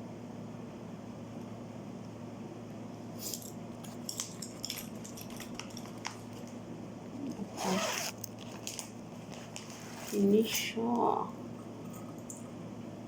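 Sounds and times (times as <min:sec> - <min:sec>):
jewelry clicking and jingling: 0:03.2 - 0:06.4.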